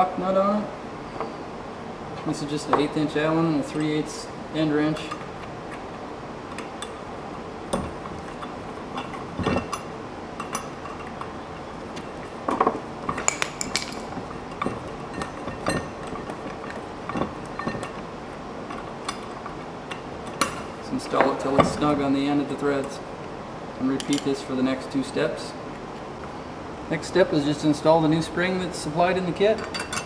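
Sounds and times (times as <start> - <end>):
metal tools clinking: 7.8 - 11.4, 12.0 - 18.0, 24.0 - 24.5, 29.5 - 30.0.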